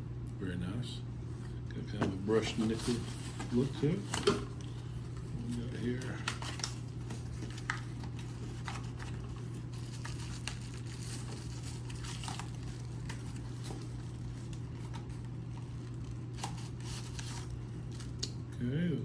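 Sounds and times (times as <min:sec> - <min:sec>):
packaging rustling: 0:02.3 - 0:18.3.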